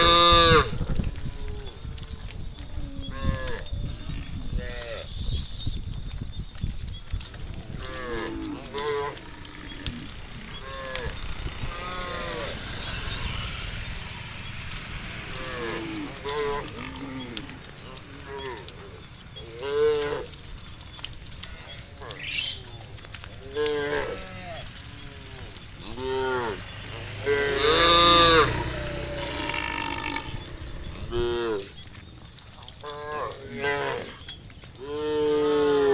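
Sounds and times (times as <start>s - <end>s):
cattle mooing: 7.8s - 13.3s, 15.2s - 20.3s, 21.4s - 31.7s.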